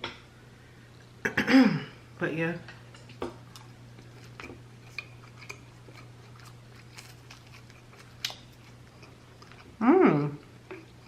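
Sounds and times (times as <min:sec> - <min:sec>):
steady low hum: 0:00.0 - 0:11.0
soft chewing: 0:02.8 - 0:11.0.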